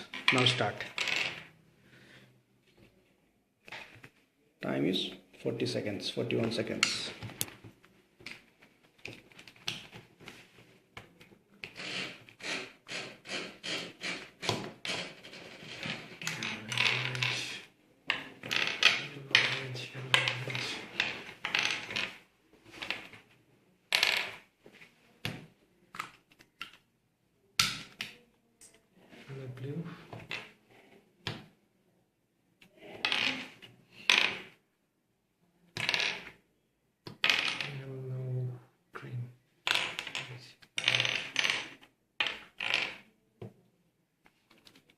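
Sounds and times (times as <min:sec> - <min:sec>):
plastic puzzle pieces clicking: 0:15.8 - 0:22.2, 0:25.2 - 0:26.8
plastic puzzle cube pieces clicking: 0:26.0 - 0:26.8.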